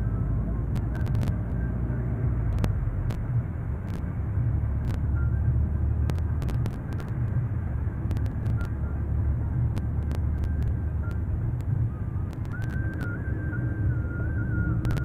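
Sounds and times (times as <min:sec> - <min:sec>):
car low rumble: 0:00.0 - 0:15.0
faint thin whine: 0:00.0 - 0:15.0
sharp clicks: 0:00.7 - 0:01.6, 0:02.5 - 0:04.0, 0:06.0 - 0:07.4, 0:08.1 - 0:08.7, 0:09.7 - 0:11.7, 0:12.3 - 0:13.2.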